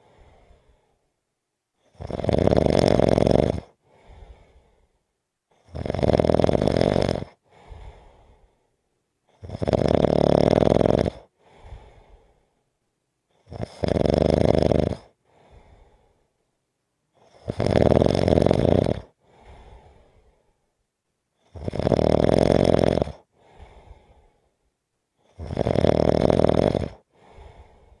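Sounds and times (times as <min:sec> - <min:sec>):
soft breath: 0:00.0 - 0:01.1, 0:03.8 - 0:05.1, 0:07.4 - 0:08.9, 0:11.4 - 0:12.7, 0:15.2 - 0:16.5, 0:19.2 - 0:20.7, 0:23.3 - 0:24.7, 0:27.0 - 0:28.0
loud snores: 0:01.9 - 0:03.8, 0:05.6 - 0:07.4, 0:09.3 - 0:11.3, 0:13.4 - 0:15.2, 0:17.2 - 0:19.2, 0:21.4 - 0:23.3, 0:25.2 - 0:27.7.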